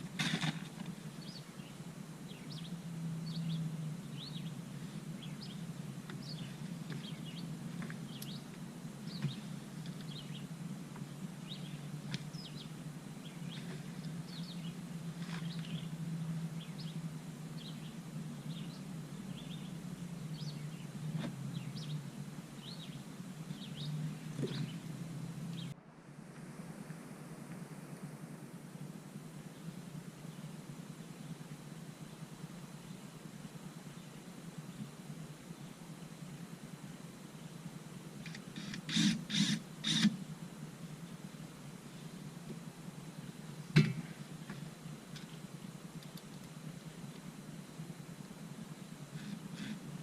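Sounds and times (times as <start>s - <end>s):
low background rumble: 0.0s - 50.0s
small birds chirping: 0.8s - 25.8s.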